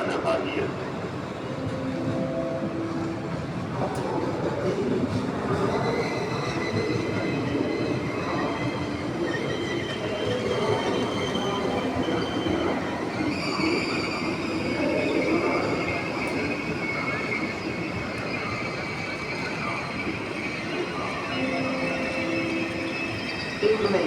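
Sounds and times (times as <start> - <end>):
electric train rumbling on rails: 0.0 - 24.0
high multi-tone squeal: 5.5 - 24.0.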